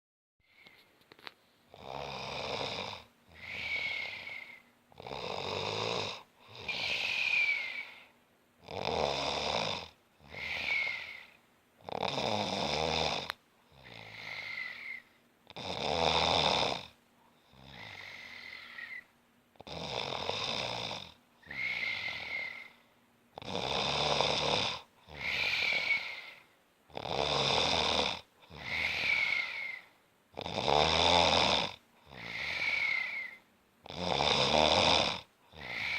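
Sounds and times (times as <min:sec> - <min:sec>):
low rattling snore: 0:01.7 - 0:07.7, 0:08.6 - 0:11.1, 0:11.8 - 0:15.0, 0:15.6 - 0:16.9, 0:19.6 - 0:22.7, 0:23.4 - 0:26.2, 0:26.9 - 0:29.7, 0:30.4 - 0:33.3, 0:33.9 - 0:35.9
whistling breath: 0:03.4 - 0:04.7, 0:06.7 - 0:08.2, 0:10.4 - 0:11.4, 0:14.2 - 0:15.2, 0:18.1 - 0:19.2, 0:21.4 - 0:22.9, 0:25.2 - 0:26.5, 0:28.6 - 0:30.0, 0:32.3 - 0:33.5, 0:35.6 - 0:35.9.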